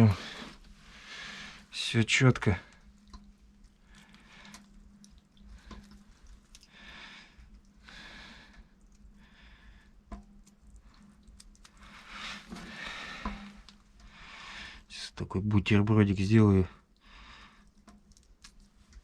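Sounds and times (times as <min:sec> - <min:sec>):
faint steady low hum: 0:00.0 - 0:19.0.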